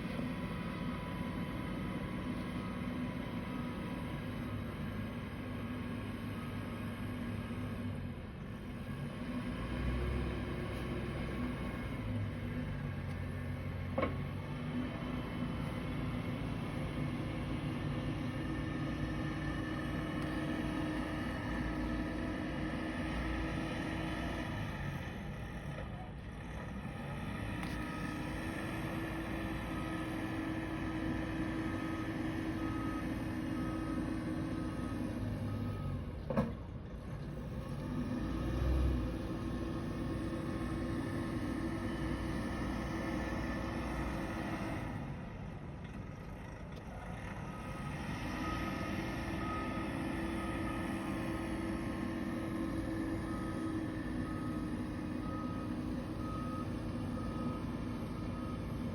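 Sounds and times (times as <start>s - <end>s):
heavy truck engine running: 0.0s - 58.9s
faint reversing beeper: 27.6s - 36.1s, 47.4s - 58.9s.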